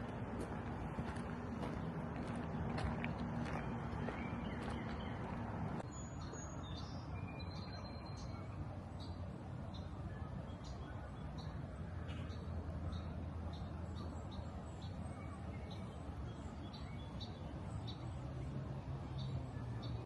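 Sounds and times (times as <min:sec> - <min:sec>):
steady low rumble: 0:00.0 - 0:05.9
birds chirping: 0:00.0 - 0:20.0.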